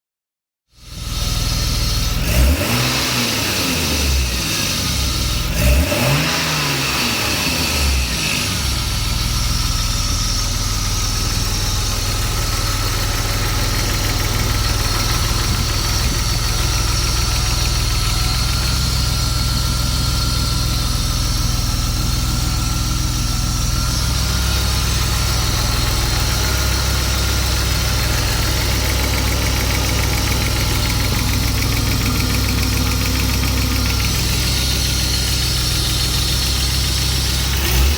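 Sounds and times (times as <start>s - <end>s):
car engine revving and idling: 0.8s - 37.9s
engine ticking: 8.6s - 37.9s.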